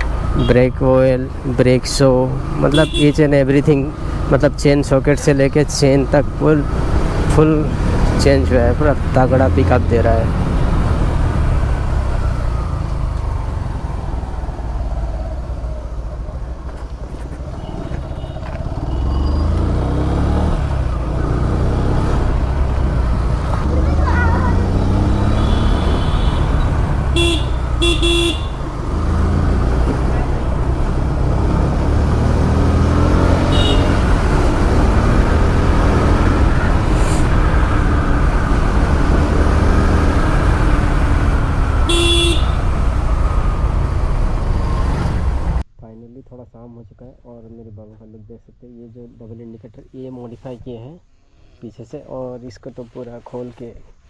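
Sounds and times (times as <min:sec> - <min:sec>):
motorcycle engine running: 0:00.0 - 0:45.6
vehicle horn honking: 0:00.3 - 0:00.8, 0:02.5 - 0:04.3, 0:17.4 - 0:19.6, 0:23.6 - 0:31.6, 0:32.5 - 0:37.6, 0:40.2 - 0:43.8.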